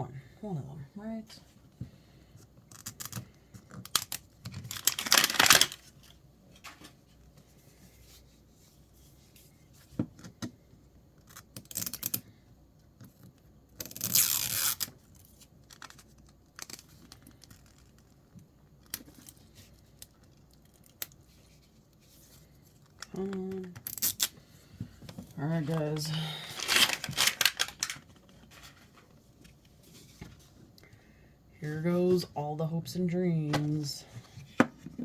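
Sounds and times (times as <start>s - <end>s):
plastic packaging ripping: 3.8s - 6.0s, 13.9s - 15.0s, 25.7s - 28.1s
handling clicks and rustles: 24.9s - 30.8s.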